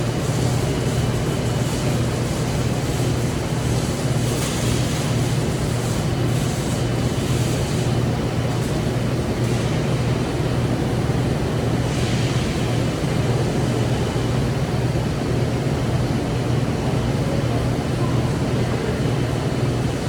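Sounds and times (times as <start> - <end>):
welding arc buzzing and hissing: 0.0 - 10.5.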